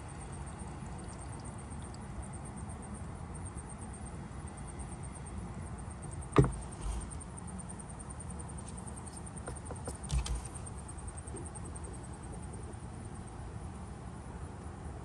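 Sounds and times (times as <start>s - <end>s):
hard objects knocking: 6.4s - 6.8s.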